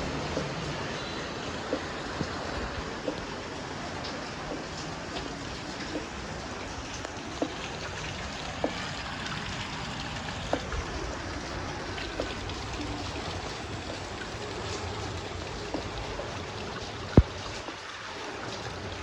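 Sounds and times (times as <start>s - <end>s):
steady rain: 0.0s - 19.0s
sharp drip taps: 0.1s - 3.3s, 6.9s - 10.8s.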